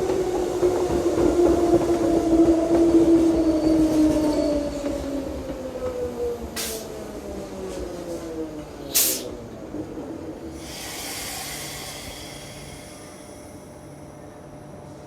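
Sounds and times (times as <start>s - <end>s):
air brake hiss: 8.9s - 9.3s, 10.6s - 13.7s.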